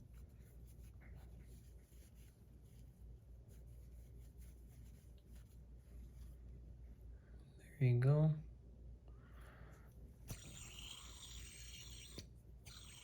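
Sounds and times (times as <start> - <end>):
cloth rubbing: 0.0 - 6.7
low room hum: 0.0 - 13.0.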